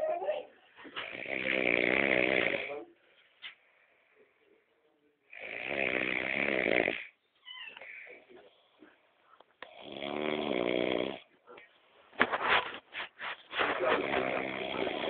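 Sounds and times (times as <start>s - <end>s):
man snoring: 1.0s - 2.8s, 5.3s - 7.2s, 9.6s - 11.3s, 13.9s - 15.0s.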